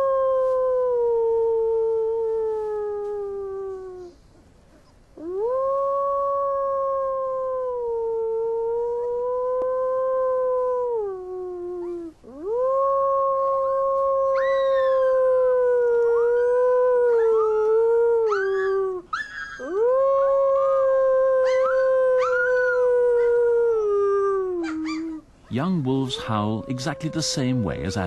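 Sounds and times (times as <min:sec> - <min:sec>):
high wavering pup howl: 0:00.0 - 0:04.2, 0:05.2 - 0:28.0
low steady howl: 0:00.0 - 0:28.0.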